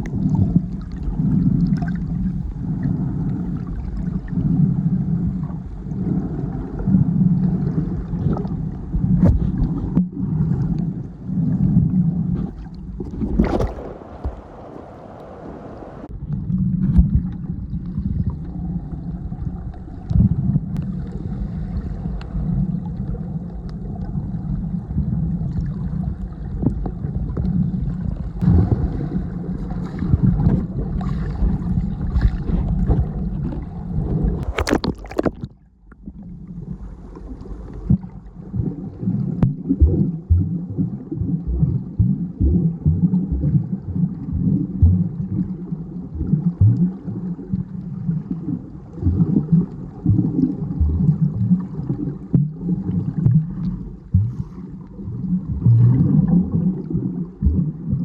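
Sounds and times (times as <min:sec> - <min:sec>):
muffled underwater rumble: 0:00.0 - 0:58.0
underwater clicks and knocks: 0:09.1 - 0:10.9, 0:12.4 - 0:14.6, 0:29.6 - 0:36.1, 0:39.4 - 0:40.6, 0:46.2 - 0:46.9, 0:49.0 - 0:51.6, 0:52.3 - 0:52.6, 0:53.2 - 0:54.6.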